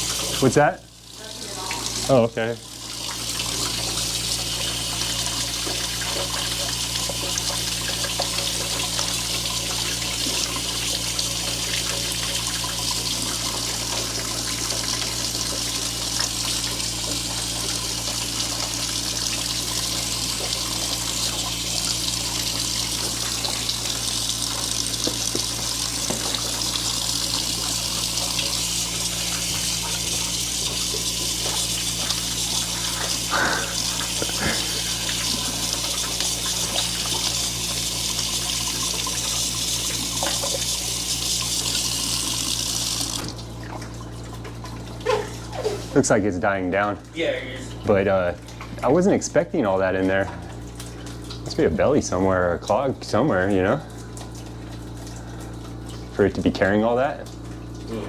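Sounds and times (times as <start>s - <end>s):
water trickling into a bucket: 0.0s - 58.0s
steady low hum: 16.7s - 40.5s.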